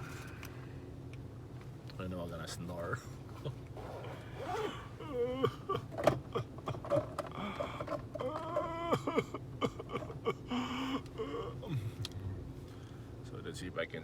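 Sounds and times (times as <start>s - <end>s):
man humming: 4.5s - 12.4s.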